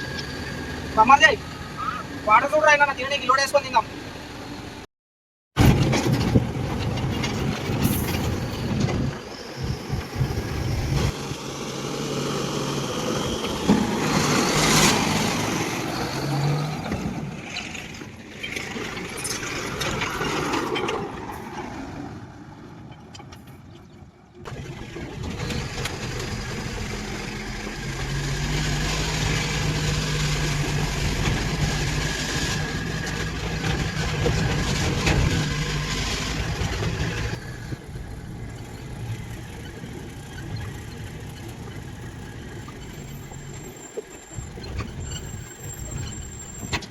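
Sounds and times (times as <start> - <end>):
heavy diesel engines running: 17.8 - 46.9.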